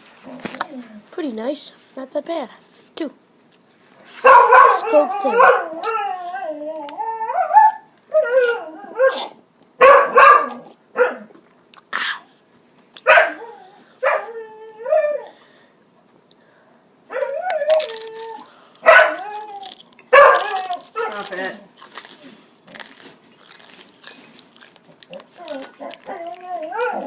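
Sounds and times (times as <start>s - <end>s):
dog barking: 4.2s - 5.7s, 9.0s - 11.3s, 13.0s - 13.4s, 14.0s - 14.3s, 18.8s - 19.2s, 20.1s - 21.3s
dog whining: 4.3s - 9.4s, 17.1s - 22.5s, 23.4s - 27.0s.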